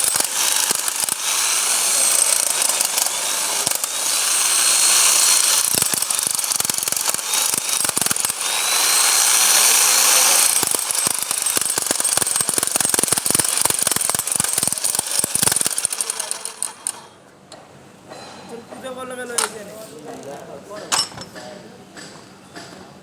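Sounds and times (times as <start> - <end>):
hammer drill running: 0.0 - 17.0.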